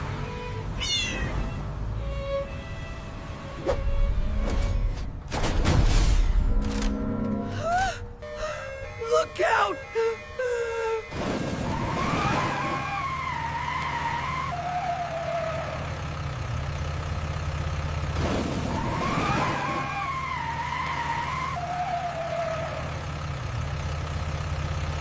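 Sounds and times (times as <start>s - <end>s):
cartoon brakes screeching: 0.8s - 1.5s
low engine rumble: 22.2s - 25.0s.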